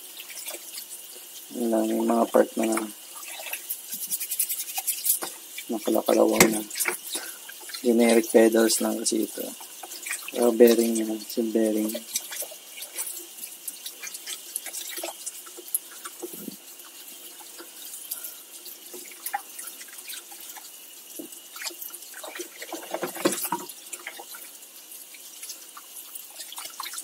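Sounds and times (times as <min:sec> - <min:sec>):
water splashing in a sink: 0:00.0 - 0:27.0
parts clicking and knocking: 0:22.6 - 0:23.7.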